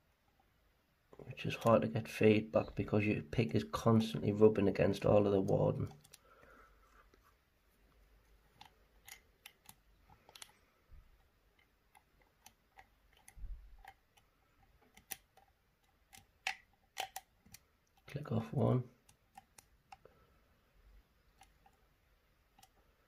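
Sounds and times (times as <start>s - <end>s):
lock pick clicking and scraping: 5.5s - 6.3s, 8.5s - 18.1s, 19.0s - 20.1s, 21.2s - 23.0s.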